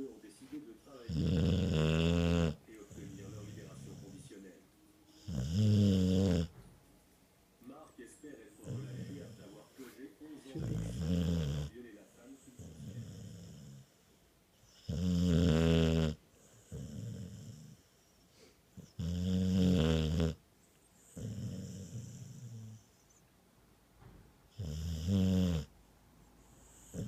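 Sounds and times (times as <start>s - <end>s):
soft breaths: 0.0s - 14.8s, 16.2s - 19.0s
deep snoring: 1.0s - 4.3s, 5.1s - 6.5s, 8.6s - 9.5s, 10.6s - 11.8s, 12.4s - 14.0s, 14.7s - 17.9s, 18.8s - 20.4s, 21.1s - 22.9s, 24.6s - 25.7s, 26.6s - 27.0s.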